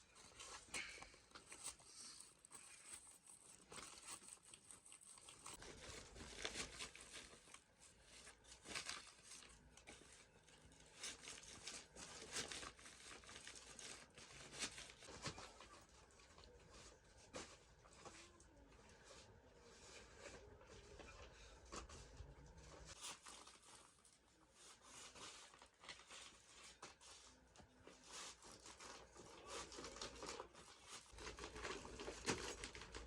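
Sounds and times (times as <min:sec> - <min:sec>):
rustling and crinkling: 0:00.0 - 0:33.0.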